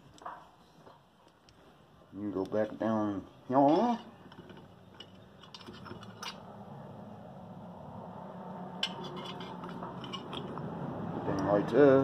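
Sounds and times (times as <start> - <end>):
small metal parts clicking: 3.7 - 6.4, 8.8 - 10.7.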